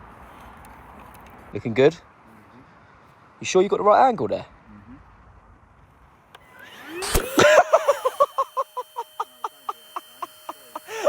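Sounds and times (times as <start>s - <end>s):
vacuum cleaner motor whine: 6.4s - 11.0s.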